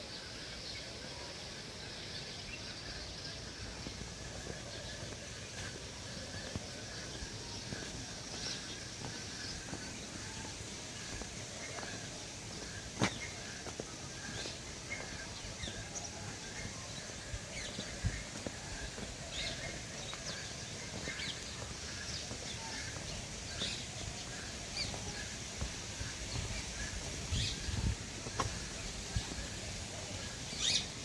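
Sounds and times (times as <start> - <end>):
background hiss: 0.0 - 31.0
birds chirping: 0.0 - 31.0.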